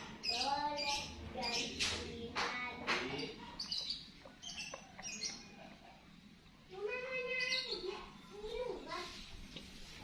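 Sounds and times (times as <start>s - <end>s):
high bird chirps: 3.1s - 5.6s, 7.1s - 8.5s.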